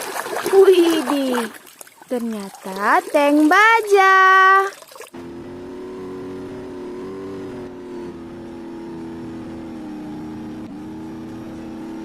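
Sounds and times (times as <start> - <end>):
vehicle engine drone: 5.1 - 12.0.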